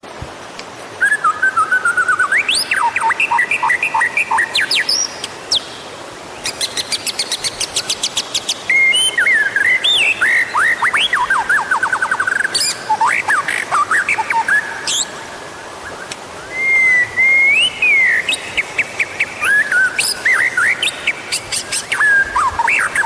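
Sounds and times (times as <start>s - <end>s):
bird singing whistled phrases: 1.0s - 5.1s, 8.7s - 15.1s, 15.8s - 18.6s, 19.4s - 23.0s.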